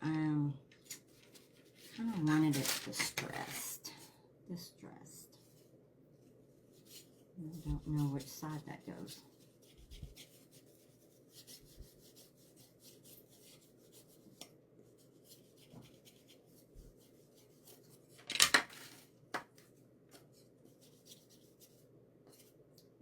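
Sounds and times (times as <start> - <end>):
hands rubbing craft materials: 6.6 - 22.9.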